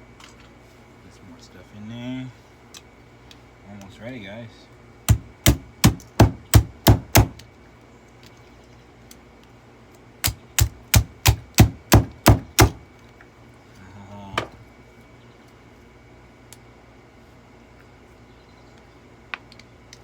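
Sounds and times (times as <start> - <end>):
hard knocks into vacuum cleaner: 5.1 - 7.4, 10.6 - 12.8.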